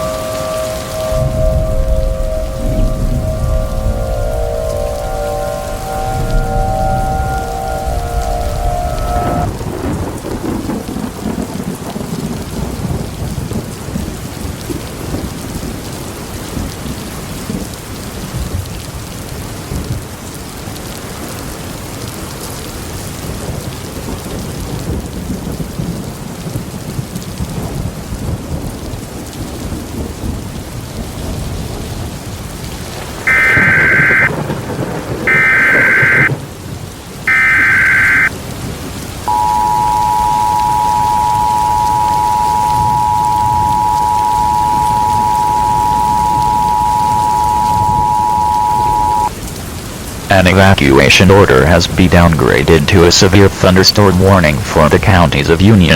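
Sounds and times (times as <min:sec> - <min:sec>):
rumbling thunder: 0:00.0 - 0:15.8, 0:33.4 - 0:36.8
heavy rain: 0:00.0 - 0:55.9
alert data tone bursts: 0:33.3 - 0:34.3, 0:35.3 - 0:36.3, 0:37.3 - 0:38.3, 0:39.3 - 0:49.3.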